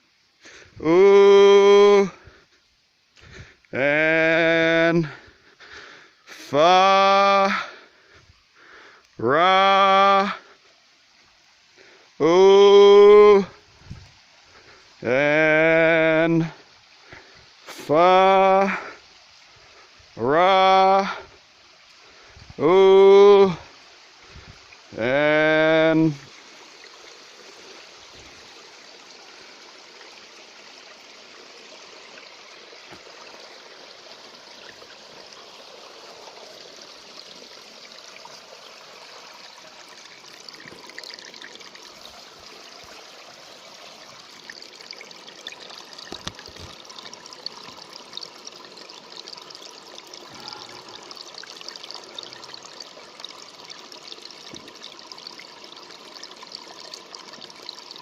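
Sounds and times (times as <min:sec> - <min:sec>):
water trickling: 0:00.0 - 0:58.0.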